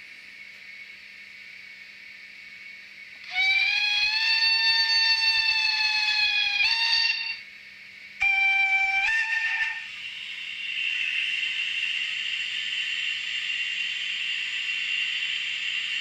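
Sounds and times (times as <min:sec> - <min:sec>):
steam locomotive whistle: 0:03.2 - 0:07.4, 0:08.2 - 0:16.0.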